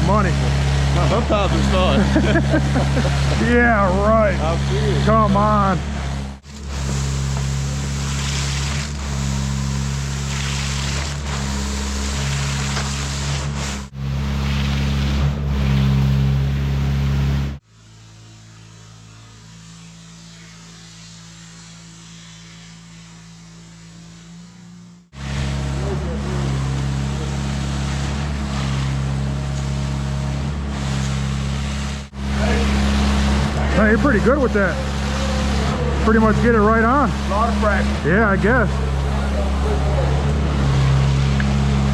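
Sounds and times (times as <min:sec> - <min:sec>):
rushing wash of pumped concrete: 0:00.0 - 0:16.1, 0:25.1 - 0:41.9
concrete pump truck engine drone: 0:00.0 - 0:41.9
hiss: 0:06.5 - 0:15.8, 0:17.6 - 0:32.8.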